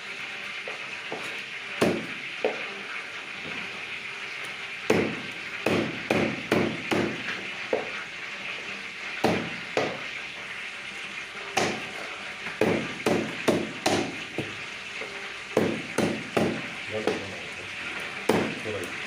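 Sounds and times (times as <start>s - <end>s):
cleaver chopping chicken: 1.1s - 2.6s, 4.9s - 8.0s, 9.2s - 10.1s, 11.5s - 14.6s, 15.5s - 17.5s, 18.2s - 19.0s.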